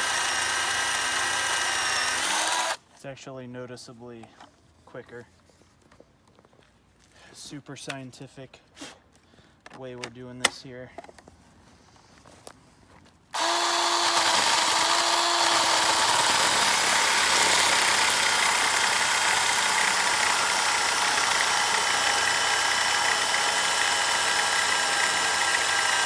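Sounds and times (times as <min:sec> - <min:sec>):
chainsaw cutting wood: 0:00.0 - 0:02.8, 0:13.4 - 0:26.0.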